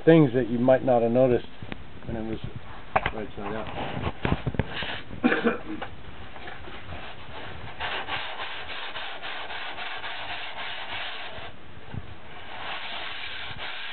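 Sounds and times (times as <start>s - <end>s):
sandpaper rasping on surfboard: 7.0s - 11.6s, 12.3s - 13.9s.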